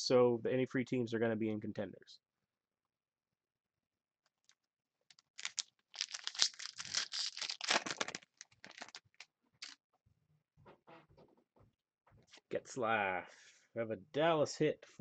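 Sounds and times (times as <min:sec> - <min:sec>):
wrapper tearing and crinkling: 0:05.1 - 0:09.8.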